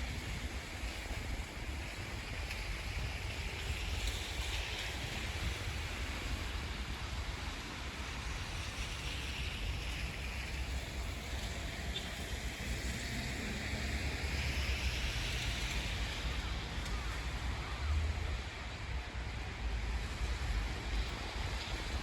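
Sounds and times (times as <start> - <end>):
road traffic passing: 10.5 - 22.0.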